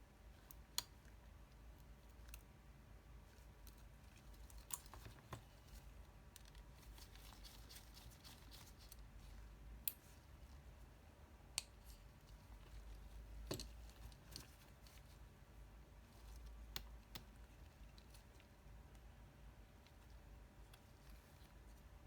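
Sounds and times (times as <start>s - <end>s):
small tools clicking and tapping: 13.4s - 14.6s.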